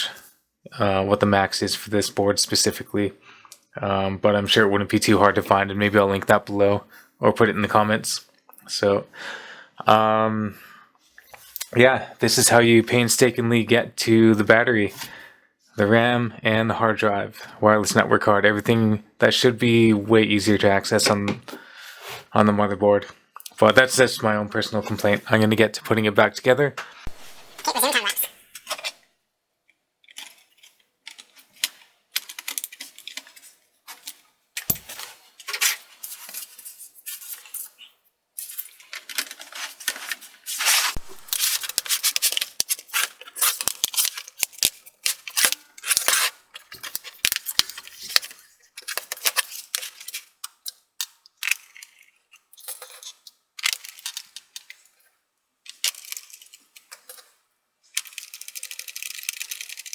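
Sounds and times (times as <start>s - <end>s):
small plastic and metal parts clicking: 30.0s - 34.8s, 41.3s - 54.9s, 55.6s - 57.3s, 57.9s - 59.9s.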